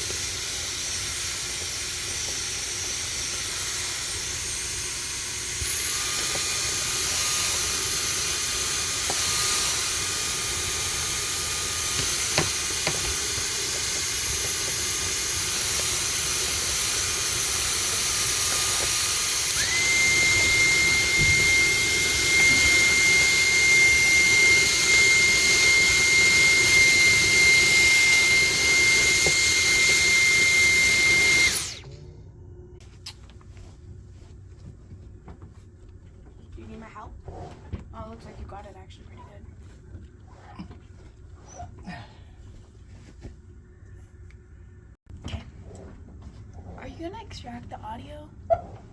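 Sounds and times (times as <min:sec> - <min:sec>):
vacuum cleaner running: 0:00.0 - 0:32.1.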